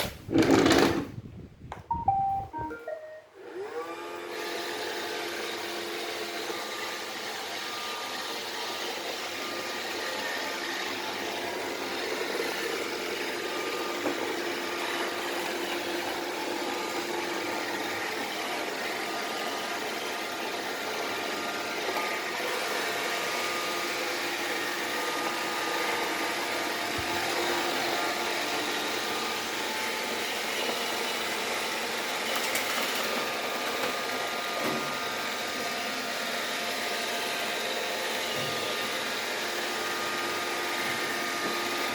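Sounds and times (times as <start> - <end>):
vacuum cleaner running: 0.0 - 1.1, 3.4 - 41.9.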